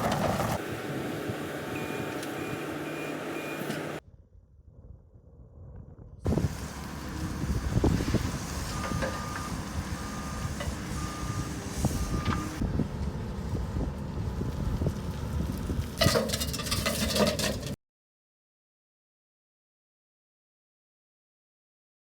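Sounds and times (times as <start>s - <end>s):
skid steer engine running: 0.0s - 4.0s, 6.3s - 17.8s
reversing alarm beeping: 1.7s - 4.0s, 8.6s - 12.6s
clattering: 16.0s - 17.8s.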